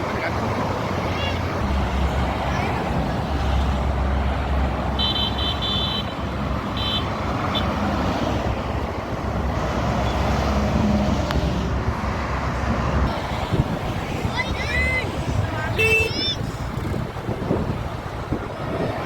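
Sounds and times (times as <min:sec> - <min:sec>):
highway traffic rumble: 0:00.0 - 0:19.0.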